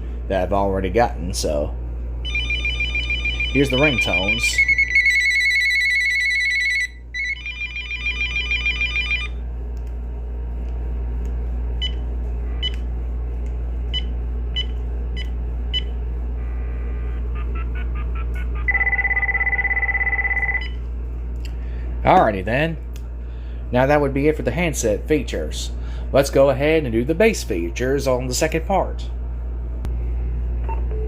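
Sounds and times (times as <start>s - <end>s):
low hum: 0.0s - 31.0s
phone ringtones trilling: 2.3s - 9.3s, 17.4s - 20.7s.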